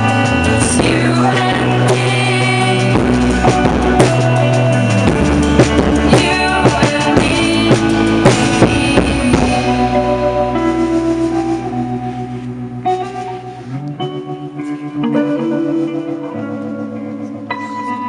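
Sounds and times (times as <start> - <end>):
drum kit hits: 0.0 - 11.9
pop-rock band playing: 0.0 - 18.0.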